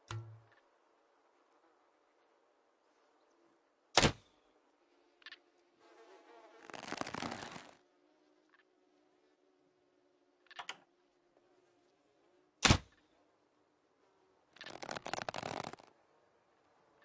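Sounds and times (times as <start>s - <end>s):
sharp loud snap: 4.0s - 4.2s, 12.6s - 12.9s
dense rattling clicks: 14.6s - 15.9s.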